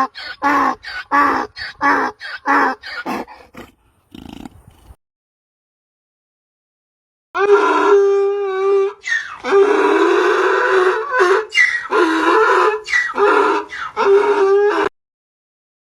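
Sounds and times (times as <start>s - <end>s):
donkey braying: 0.0s - 4.7s, 7.4s - 14.9s.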